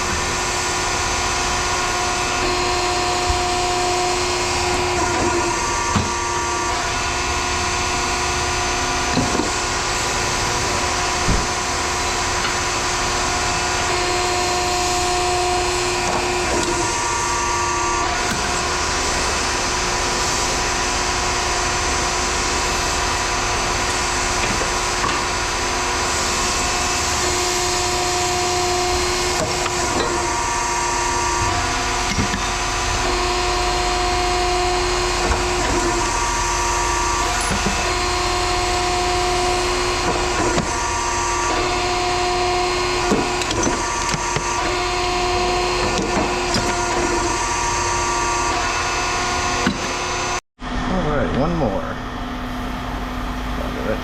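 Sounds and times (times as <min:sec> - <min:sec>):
heavy machinery running: 0:00.0 - 0:54.0
machine whine: 0:00.0 - 0:54.0.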